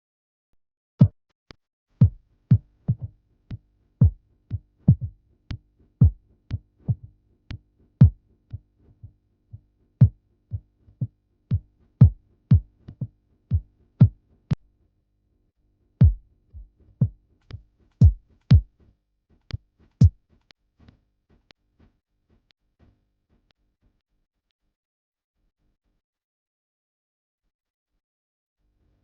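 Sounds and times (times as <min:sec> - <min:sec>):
drum machine beat: 0:02.0 - 0:14.2, 0:16.0 - 0:18.8.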